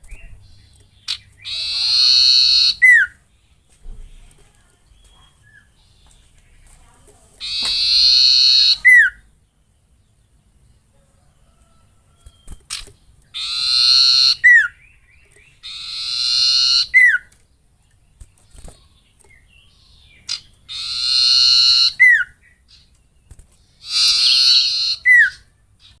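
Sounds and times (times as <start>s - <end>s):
songbird harsh buzzing calls: 0.2s - 3.2s, 7.4s - 9.3s, 13.3s - 14.9s, 15.6s - 17.3s, 20.1s - 22.9s, 23.8s - 26.0s.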